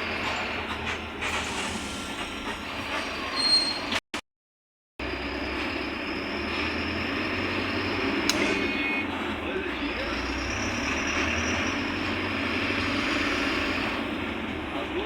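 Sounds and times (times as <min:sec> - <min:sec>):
bus diesel engine: 0:00.0 - 0:04.0, 0:05.0 - 0:15.0
high squeal: 0:03.3 - 0:04.0, 0:10.0 - 0:14.0.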